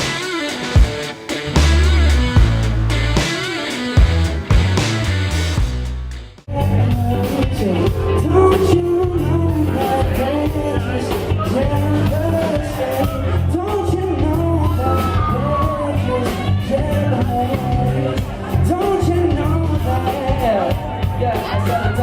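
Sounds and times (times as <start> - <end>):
rock band playing live: 0.0 - 22.0
person singing: 6.5 - 22.0.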